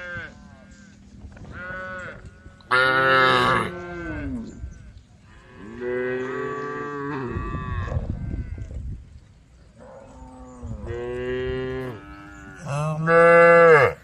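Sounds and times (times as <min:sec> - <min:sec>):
cattle mooing: 0:01.6 - 0:04.5, 0:09.8 - 0:14.0.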